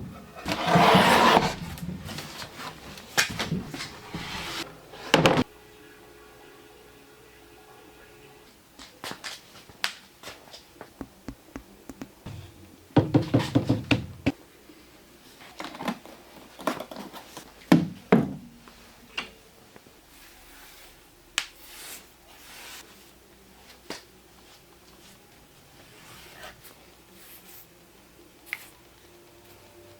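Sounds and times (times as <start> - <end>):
hard objects tapping and knocking: 11.0 - 14.4
heavy thumps: 11.0 - 14.4.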